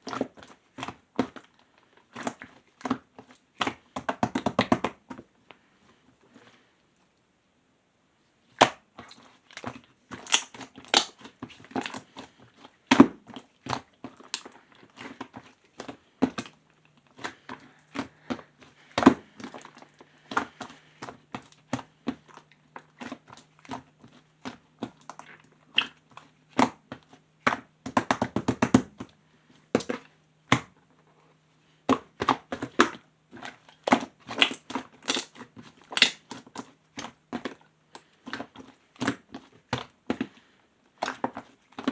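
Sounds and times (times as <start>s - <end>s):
slime squished by hand: 8.6s - 29.0s, 31.9s - 40.4s.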